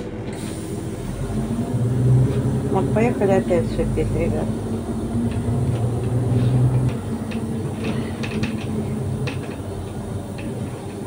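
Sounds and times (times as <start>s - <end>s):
bus engine droning: 0.0s - 11.0s
hiss of escaping air: 0.3s - 2.7s, 4.4s - 11.0s
clicks and rattles from bus body: 5.2s - 11.0s.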